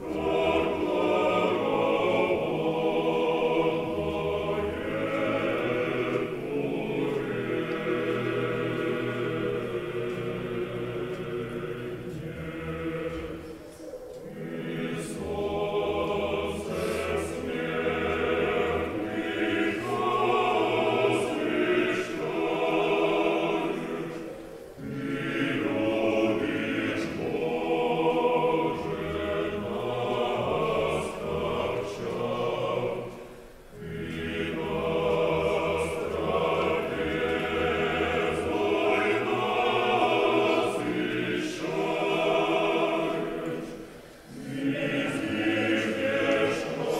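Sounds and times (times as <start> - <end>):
choir singing a slow chant: 0.0 - 46.9
singers breathing: 16.6 - 17.3, 43.6 - 44.3.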